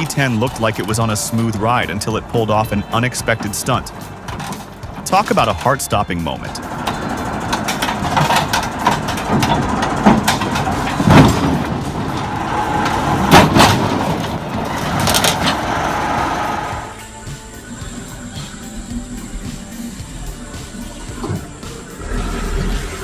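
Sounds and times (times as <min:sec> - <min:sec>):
heavy vehicle rattling: 0:00.0 - 0:17.2, 0:17.9 - 0:23.0
loud bangs: 0:06.6 - 0:16.9.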